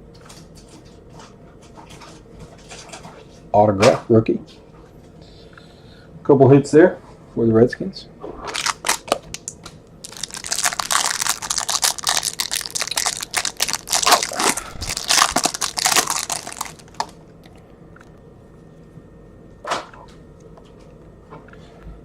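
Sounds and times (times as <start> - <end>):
wrapper crinkling and tearing: 8.5 - 17.6.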